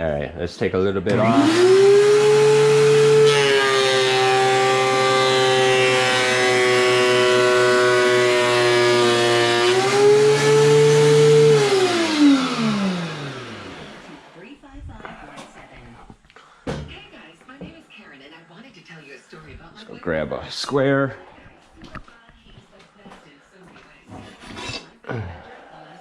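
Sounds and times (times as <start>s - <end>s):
thickness planer motor whine: 1.1s - 14.4s.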